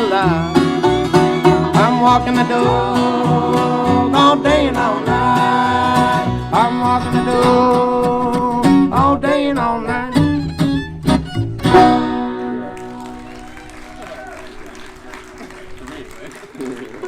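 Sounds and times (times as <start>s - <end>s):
bluegrass band with banjo and guitar: 0.0s - 17.0s.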